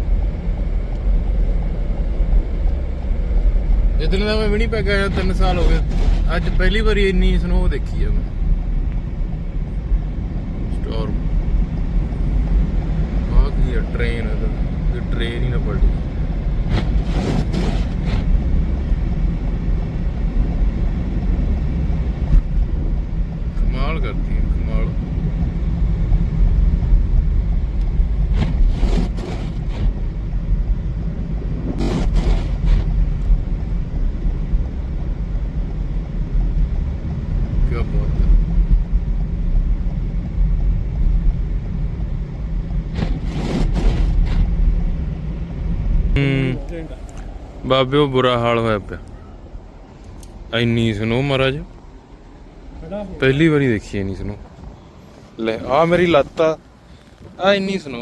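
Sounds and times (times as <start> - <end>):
car driving rumble: 0.0 - 58.0
rush of wind: 25.1 - 35.8.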